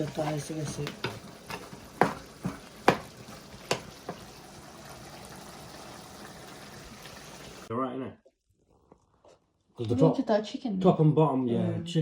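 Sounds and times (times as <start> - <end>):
metal spoon knocking on pot: 0.0 - 4.3
meat sizzling in a pan: 0.0 - 7.7.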